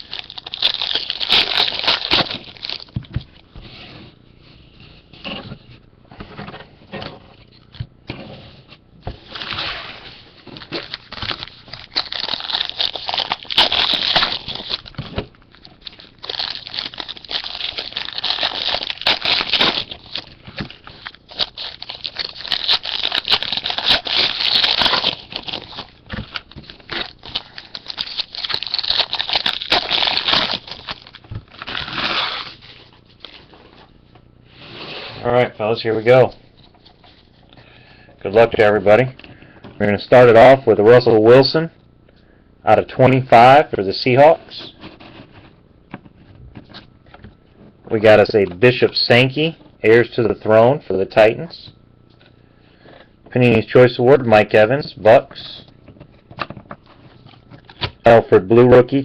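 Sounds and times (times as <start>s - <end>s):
plastic and cardboard rustling: 0.0s - 7.8s, 8.4s - 37.5s, 44.5s - 49.7s, 55.0s - 58.3s.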